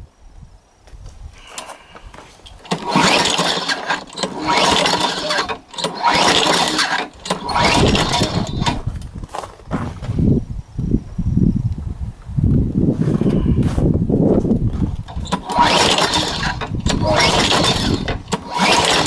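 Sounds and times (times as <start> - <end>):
lawnmower engine running: 1.5 - 9.0, 14.7 - 19.0.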